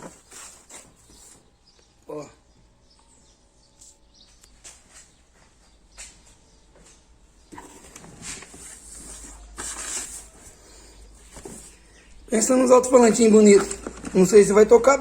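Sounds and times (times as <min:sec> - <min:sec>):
rustling and scraping: 0:00.0 - 0:01.6, 0:06.9 - 0:12.1.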